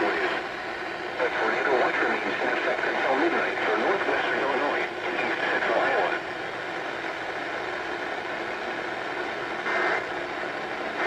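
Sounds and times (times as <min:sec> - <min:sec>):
radio static hiss: 0:00.0 - 0:00.5, 0:01.1 - 0:06.3, 0:08.6 - 0:11.0.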